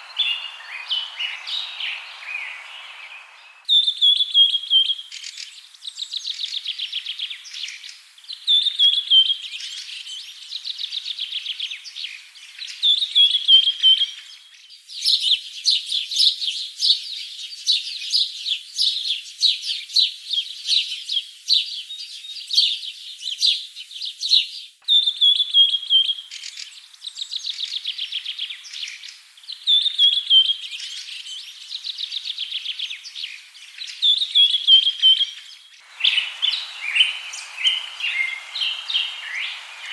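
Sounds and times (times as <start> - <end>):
songbird whistle and trill: 0.0 - 7.6, 24.3 - 39.9
many overlapping bird chirps: 0.0 - 39.9.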